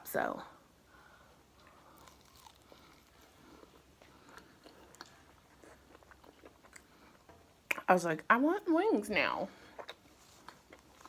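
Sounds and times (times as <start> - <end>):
chewing chicken wings: 2.0 - 7.2.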